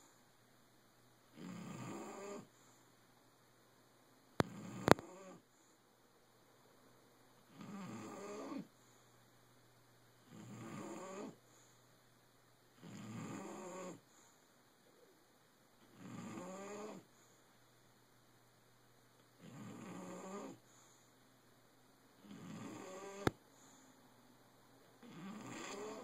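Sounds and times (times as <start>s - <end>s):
quiet breathing: 0.0s - 0.4s, 1.3s - 3.3s, 4.4s - 6.2s, 7.4s - 18.1s, 19.2s - 26.0s
slow rasping snores: 1.3s - 2.6s, 4.4s - 5.4s, 7.5s - 8.7s, 10.2s - 11.5s, 12.8s - 14.3s, 15.8s - 17.2s, 19.4s - 21.0s, 22.2s - 23.8s, 25.0s - 26.0s.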